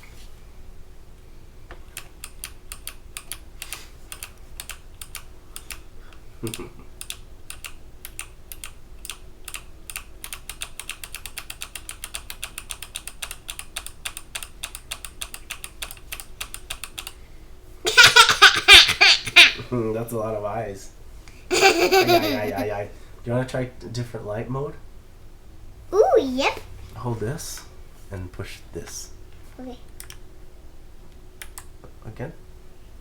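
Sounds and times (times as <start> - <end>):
burst of laughter: 17.9 - 19.6, 21.5 - 22.6.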